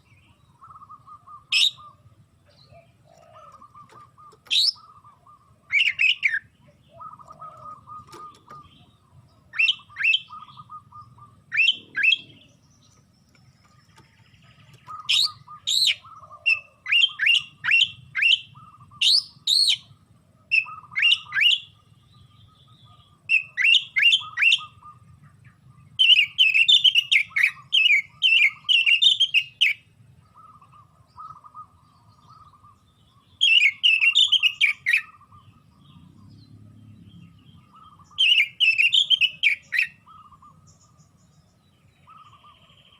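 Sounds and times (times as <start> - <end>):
bird whistled song notes: 0.0 - 42.9
bird soft chattering: 3.0 - 17.2.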